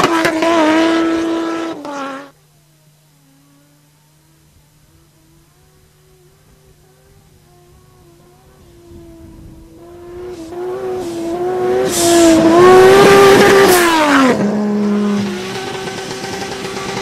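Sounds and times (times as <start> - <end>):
car engine under hard throttle: 0.0 - 17.0
short turbo hisses: 10.2 - 12.4.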